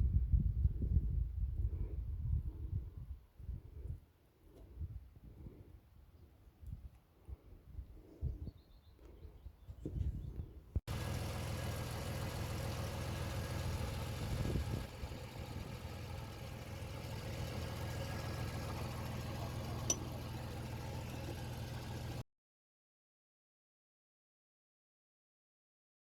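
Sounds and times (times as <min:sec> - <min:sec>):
pickup engine idling: 0:10.9 - 0:22.2.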